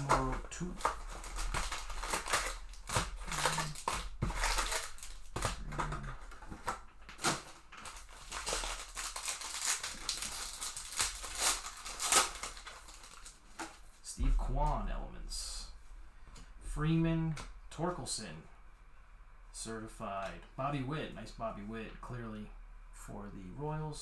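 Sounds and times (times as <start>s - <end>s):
plastic wrapping crinkling and tearing: 0.0s - 14.0s.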